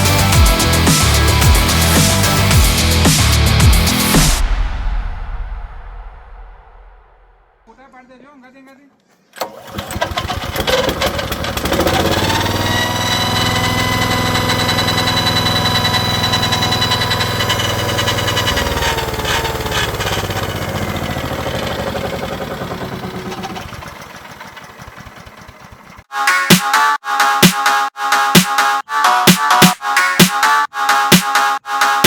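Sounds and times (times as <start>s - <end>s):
wood chipper engine revving: 0.0s - 4.2s, 9.4s - 26.0s.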